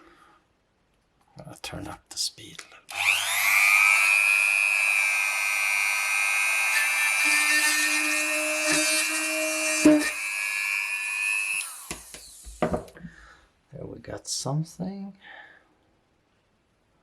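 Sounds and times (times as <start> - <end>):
small drill high whine: 2.9 - 12.7.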